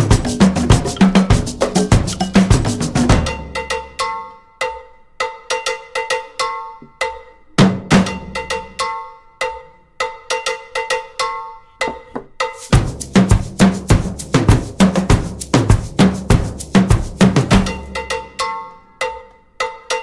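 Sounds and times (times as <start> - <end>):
drum kit hits: 0.0 - 4.0, 12.7 - 18.4
ringing pitched percussion strikes: 0.0 - 4.8, 17.6 - 20.0.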